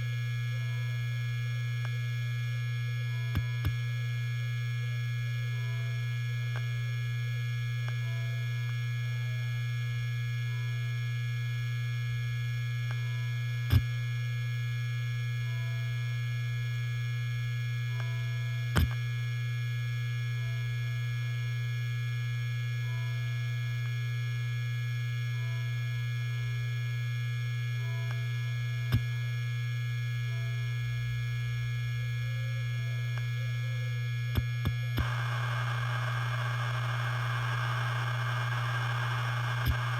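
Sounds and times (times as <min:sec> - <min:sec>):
hard disk spinning hum and whine: 0:23.8 - 0:39.9.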